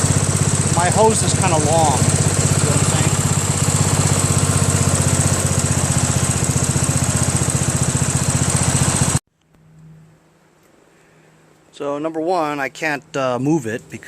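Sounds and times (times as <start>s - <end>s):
lawn tractor engine running: 0.0s - 9.2s.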